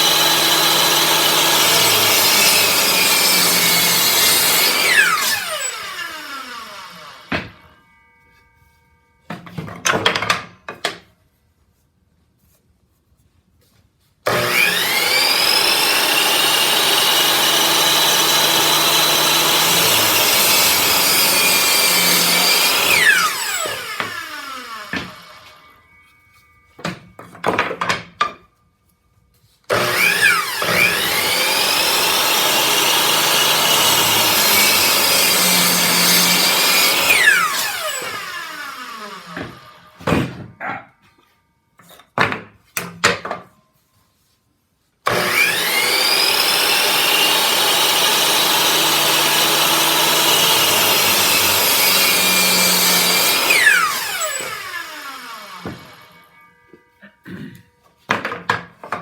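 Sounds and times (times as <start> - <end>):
power saw cutting wood: 0.0 - 8.0, 14.3 - 26.2, 29.7 - 40.5, 45.1 - 57.5.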